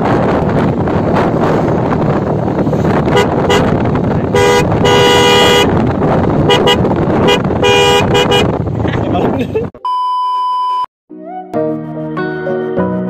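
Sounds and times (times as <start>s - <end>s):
scooter horn honking: 3.1s - 5.8s, 6.5s - 8.5s.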